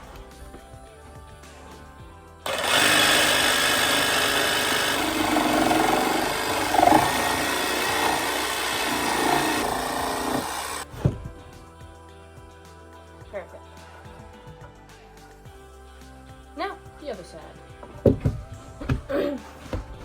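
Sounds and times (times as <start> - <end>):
electric power saw cutting: 2.5 - 10.9.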